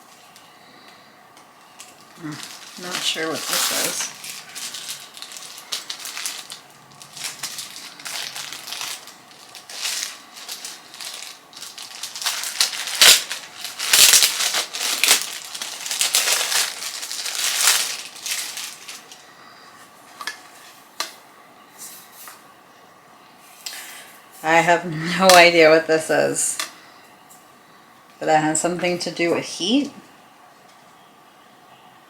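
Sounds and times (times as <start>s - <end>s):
packaging crinkling and rustling: 0.0s - 19.3s.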